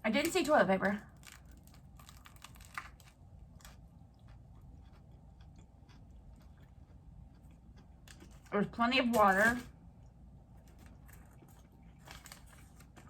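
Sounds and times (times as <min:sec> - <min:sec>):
person chewing: 0:01.1 - 0:08.5.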